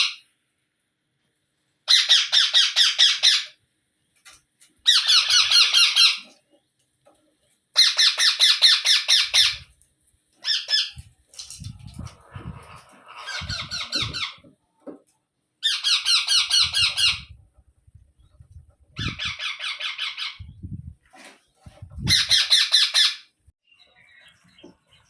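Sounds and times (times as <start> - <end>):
parakeet squawking: 1.9 - 3.6, 4.9 - 6.3, 7.8 - 9.7, 10.4 - 11.1, 11.8 - 14.5, 15.6 - 17.4, 18.9 - 20.5, 22.0 - 23.3.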